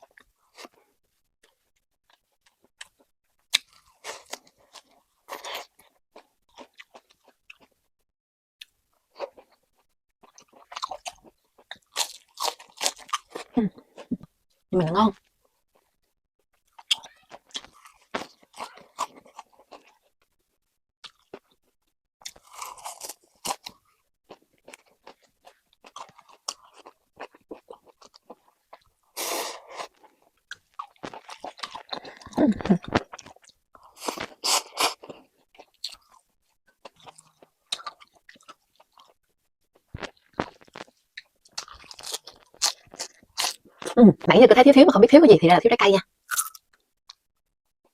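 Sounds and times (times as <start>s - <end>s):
person chewing wet and crunchy: 2.1s - 7.7s, 9.1s - 14.2s, 16.6s - 20.2s, 21.0s - 39.2s, 39.8s - 44.0s, 46.3s - 46.6s.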